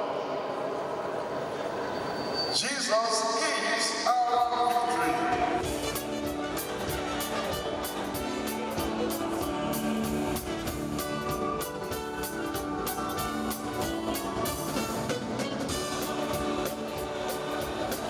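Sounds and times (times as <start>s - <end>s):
music with steady beat: 5.4s - 18.0s.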